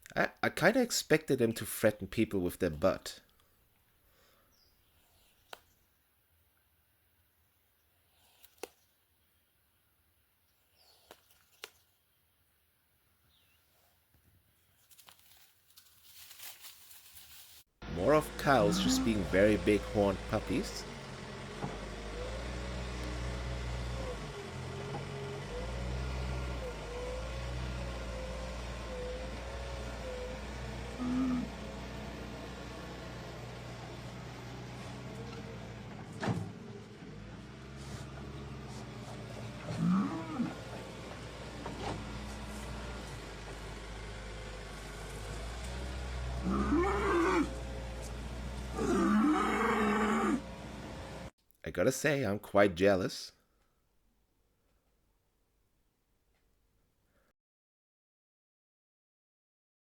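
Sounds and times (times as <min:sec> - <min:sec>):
motor low rumble: 0:17.8 - 0:51.3
cow mooing: 0:18.0 - 0:20.8, 0:31.0 - 0:31.6, 0:39.7 - 0:40.6, 0:46.4 - 0:47.6, 0:48.7 - 0:50.4.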